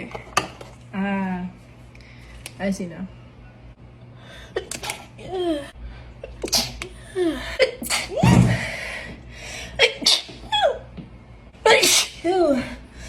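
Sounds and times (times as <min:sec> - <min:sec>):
woman sneezing: 0:06.4 - 0:06.8, 0:07.6 - 0:08.5, 0:09.8 - 0:10.8, 0:11.7 - 0:12.5.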